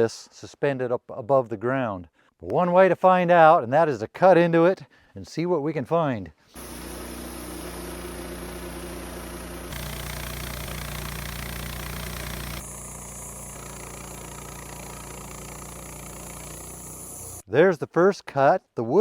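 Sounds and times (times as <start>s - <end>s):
band sawmill cutting log: 6.5s - 17.4s.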